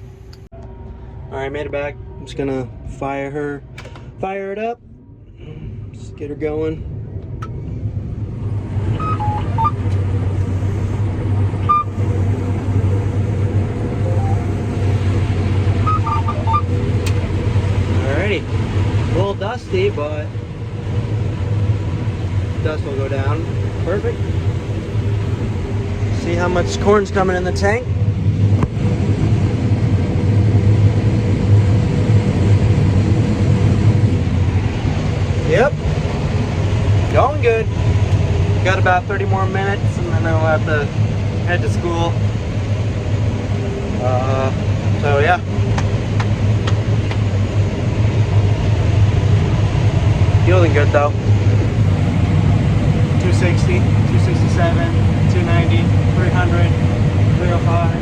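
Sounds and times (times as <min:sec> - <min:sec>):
low engine drone: 0:00.0 - 0:58.0
combine harvester running: 0:06.8 - 0:58.0
short electronic beeps: 0:08.9 - 0:09.8, 0:11.6 - 0:12.0, 0:14.0 - 0:14.5, 0:15.8 - 0:16.7.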